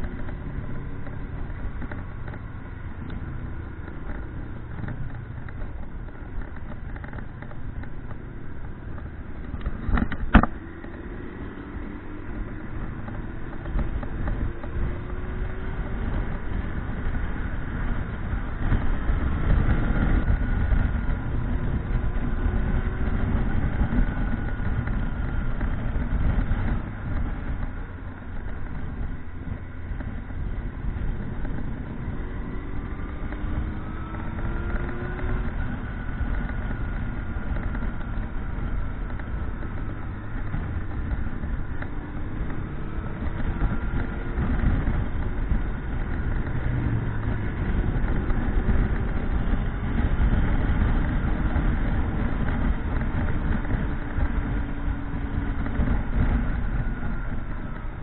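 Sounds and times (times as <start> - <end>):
motorcycle engine running: 0.0 - 58.0
wind noise rumble: 0.0 - 58.0.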